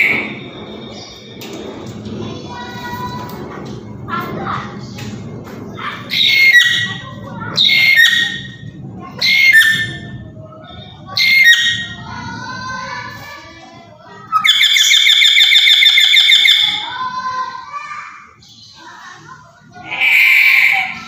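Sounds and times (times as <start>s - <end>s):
parrot rattling trill: 0.0s - 21.0s
parrot squawking: 6.1s - 8.6s, 9.2s - 10.2s, 11.1s - 12.0s, 19.8s - 21.0s.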